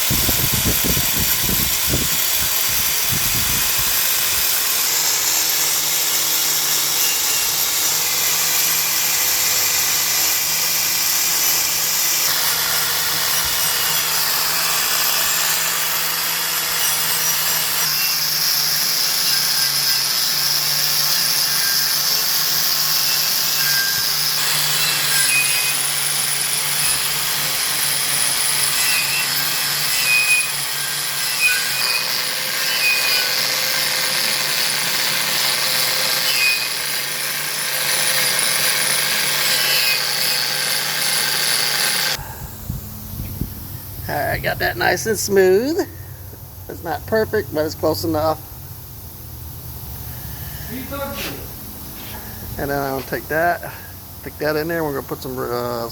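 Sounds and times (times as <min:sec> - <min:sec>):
wire wheel grinding on steel: 0:00.0 - 0:42.2.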